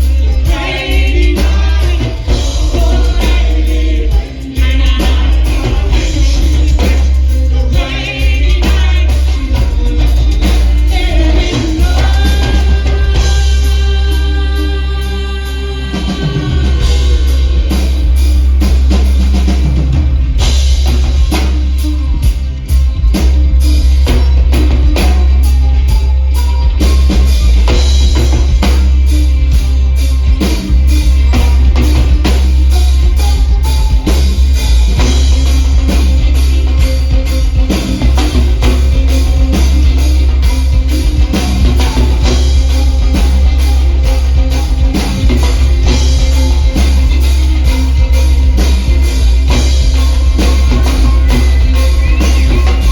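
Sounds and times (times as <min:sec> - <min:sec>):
person singing: 0:00.0 - 0:18.4
drum kit: 0:00.0 - 0:52.9
guitar: 0:00.0 - 0:52.9
heavy bass: 0:00.0 - 0:52.9.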